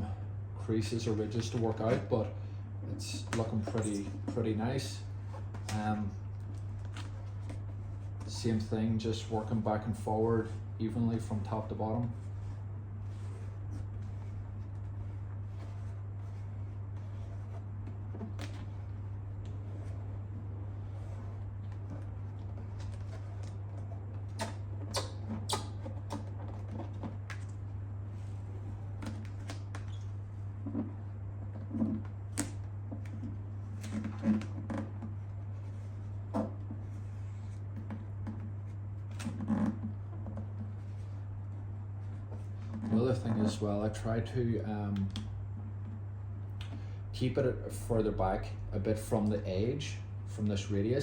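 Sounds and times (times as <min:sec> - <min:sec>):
steady low hum: 0:00.0 - 0:51.0
hands rustling and tapping vinyl decal: 0:02.9 - 0:08.6, 0:11.2 - 0:43.9.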